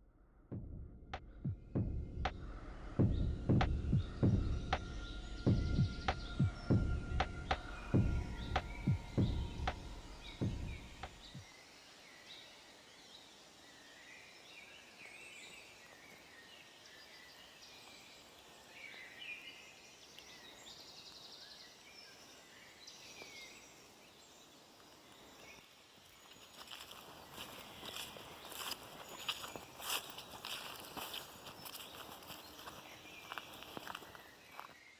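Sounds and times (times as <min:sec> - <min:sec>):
faint outdoor background noise: 0:00.0 - 0:34.9
low thumps: 0:00.5 - 0:11.4
small birds chirping: 0:01.2 - 0:34.9
bird trill: 0:02.4 - 0:11.5.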